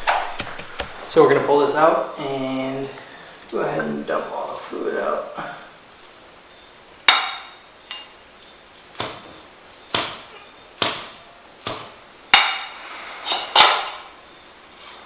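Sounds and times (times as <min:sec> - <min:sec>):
sharp metallic knocks: 0:07.1 - 0:08.1, 0:09.9 - 0:12.8.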